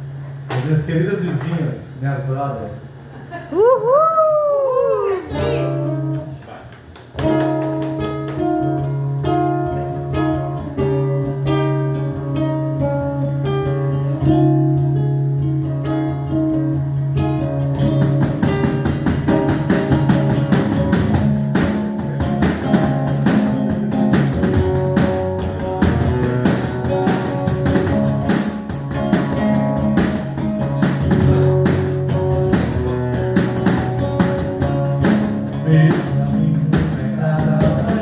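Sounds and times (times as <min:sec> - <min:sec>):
live band playing: 0:04.8 - 0:06.4, 0:07.2 - 0:38.0
fast percussion beat: 0:17.8 - 0:38.0.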